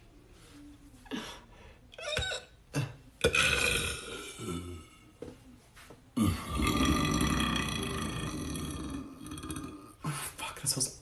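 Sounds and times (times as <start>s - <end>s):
man burping: 2.0s - 4.9s, 6.2s - 10.0s.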